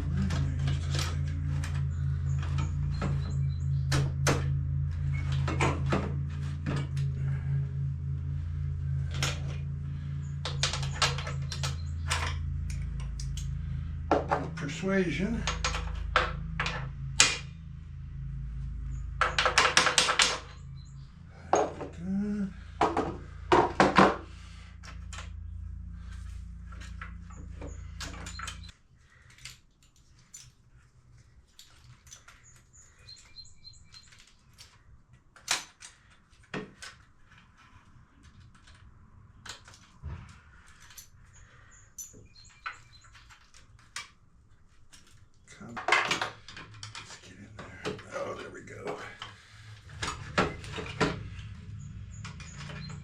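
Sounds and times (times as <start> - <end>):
steady low hum: 0.0 - 53.0.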